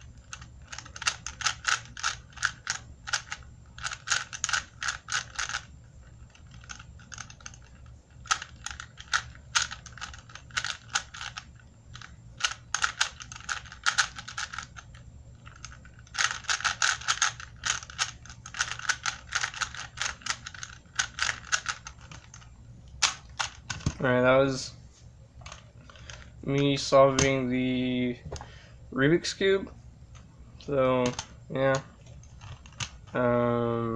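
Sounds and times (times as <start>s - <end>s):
plastic puzzle cube clicking: 0.2s - 5.7s, 6.3s - 11.4s, 12.0s - 14.8s, 15.4s - 22.4s, 32.2s - 33.0s.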